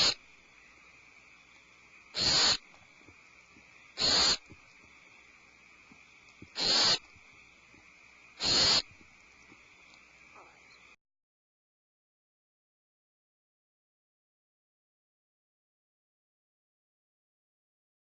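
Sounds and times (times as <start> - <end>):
barn owl hissing calls: 0.0 - 11.0.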